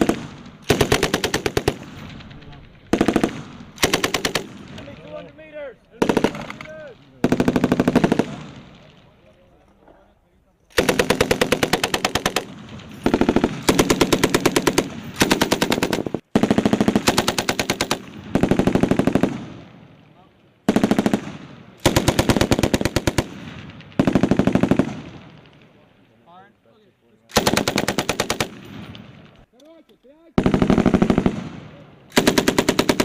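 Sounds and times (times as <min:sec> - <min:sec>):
machine gun automatic fire: 0:00.0 - 0:04.7, 0:06.0 - 0:08.6, 0:10.8 - 0:19.6, 0:20.7 - 0:25.6, 0:27.3 - 0:29.0, 0:30.4 - 0:33.0.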